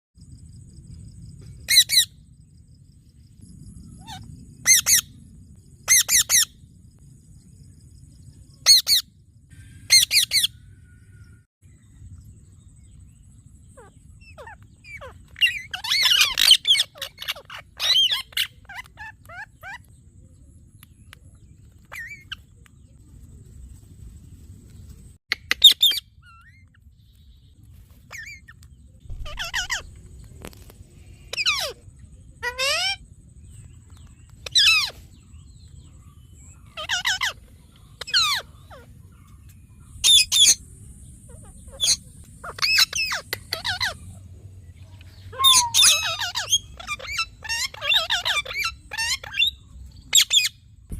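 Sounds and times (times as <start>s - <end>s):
parrot shrill calls: 4.0s - 5.1s, 9.8s - 10.6s, 13.8s - 19.8s, 29.1s - 29.9s, 32.4s - 33.0s, 36.7s - 37.4s, 41.3s - 44.0s, 45.3s - 50.6s.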